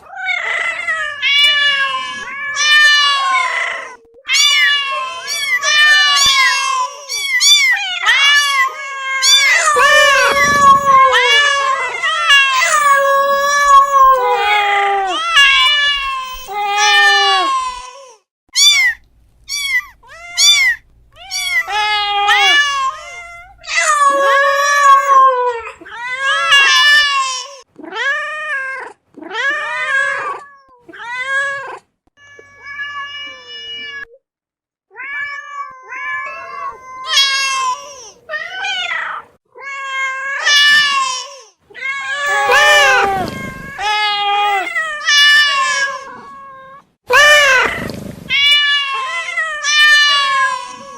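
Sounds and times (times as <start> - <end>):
cats meowing: 0.0 - 17.9, 18.6 - 34.2, 34.9 - 50.9.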